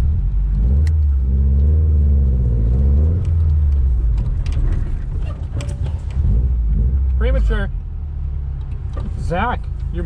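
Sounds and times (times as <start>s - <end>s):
car engine rumbling: 0.0s - 10.0s.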